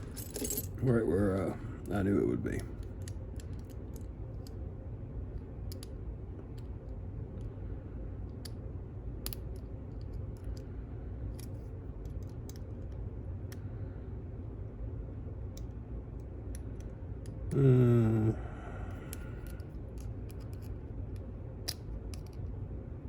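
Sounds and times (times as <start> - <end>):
metal tools tapping padlock: 0.0 - 0.8
steady low hum: 0.0 - 23.0.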